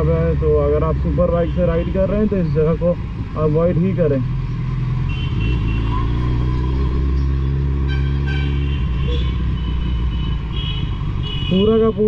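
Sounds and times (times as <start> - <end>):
car horns: 5.0 - 6.9, 7.8 - 12.0.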